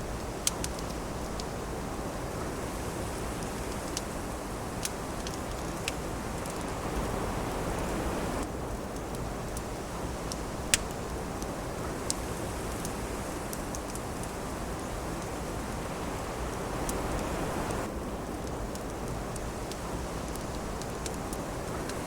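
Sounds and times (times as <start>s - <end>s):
wood fire crackling: 0.0s - 22.0s
wind rushing: 6.2s - 8.4s, 15.4s - 17.9s.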